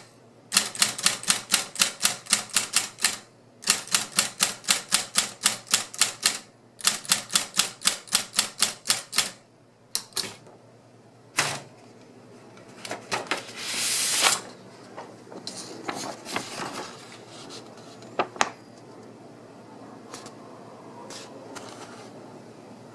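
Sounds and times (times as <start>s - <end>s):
electric typewriter keystrokes: 0.5s - 9.4s
typewriter mechanical rush: 0.5s - 9.4s.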